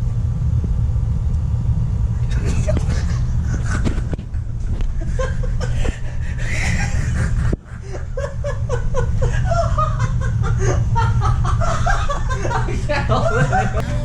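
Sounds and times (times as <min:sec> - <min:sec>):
low rumble: 0:00.0 - 0:14.0
men laughing: 0:02.5 - 0:04.1, 0:04.9 - 0:14.0.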